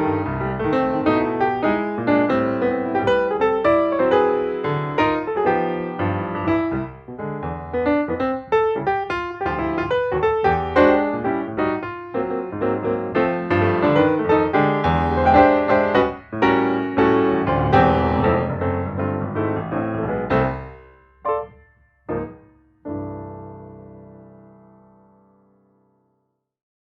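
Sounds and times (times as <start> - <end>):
piano music: 0.0 - 26.0.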